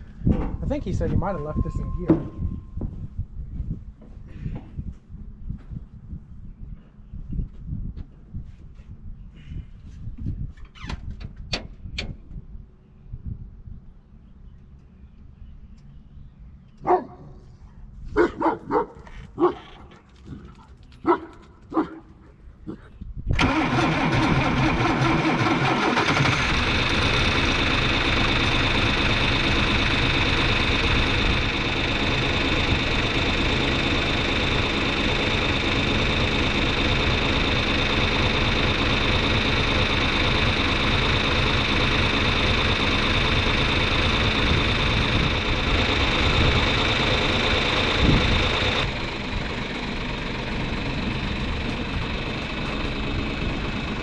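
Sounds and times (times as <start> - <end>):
tractor diesel engine running: 0.0 - 2.8, 23.3 - 54.0.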